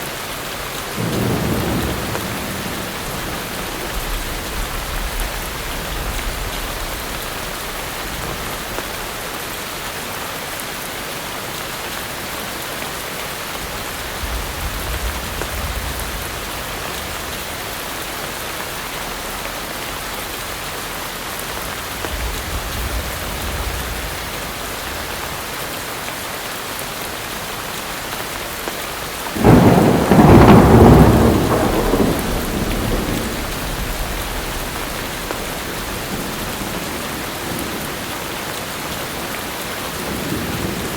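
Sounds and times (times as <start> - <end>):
heavy rain: 0.0 - 40.9
loud thunderclap: 1.0 - 9.0, 13.6 - 17.7, 21.5 - 25.4, 29.3 - 38.0
distant thunder rumbles: 1.0 - 9.2, 13.5 - 18.3, 21.4 - 25.7, 28.4 - 40.9.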